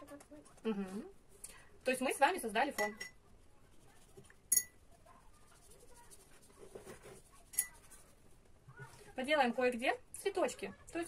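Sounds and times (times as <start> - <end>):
paintbrush clinking glass jar: 2.7 - 3.2, 4.5 - 4.8, 7.4 - 8.0
faint handling sounds: 3.2 - 9.3.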